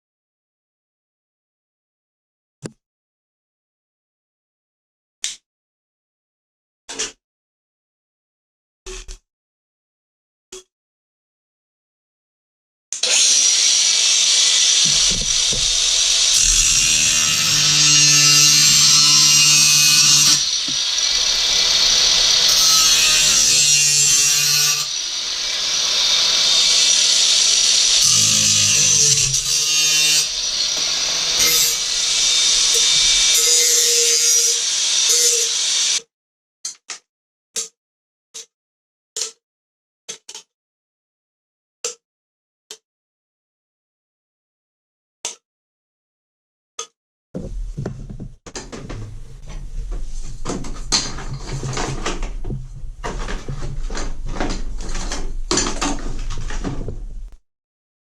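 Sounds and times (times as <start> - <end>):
power tool grinding: 13.0 - 36.0, 47.5 - 57.4
knocking and clattering of toilet parts: 47.4 - 57.4.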